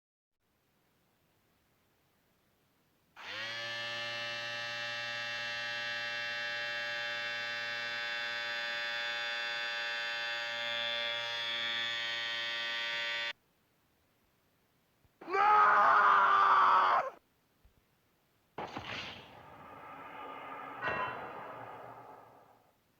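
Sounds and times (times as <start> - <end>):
loud buzzing tone: 3.2 - 13.4.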